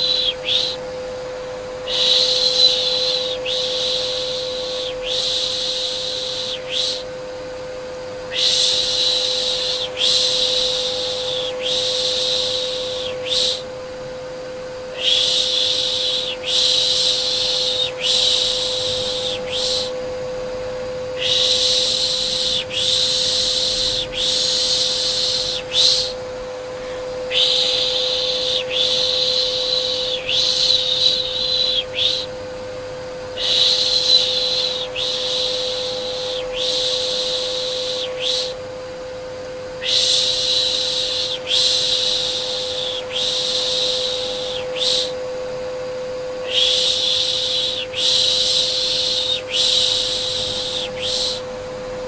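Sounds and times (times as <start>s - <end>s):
vacuum cleaner humming: 0.0s - 52.0s
person shushing: 8.3s - 13.7s, 14.9s - 20.0s, 21.2s - 32.3s, 33.4s - 38.6s, 46.4s - 51.5s.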